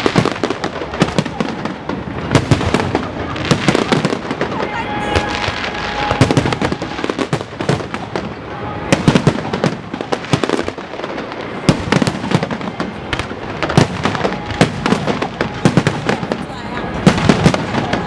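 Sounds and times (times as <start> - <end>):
fireworks bursting with bangs: 0.0 - 18.0
fireworks crackle: 0.0 - 18.0.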